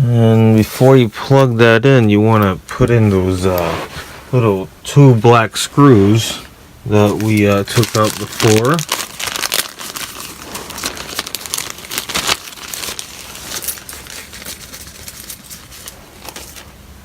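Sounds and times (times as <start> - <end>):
hands handling battery parts: 7.1 - 16.7.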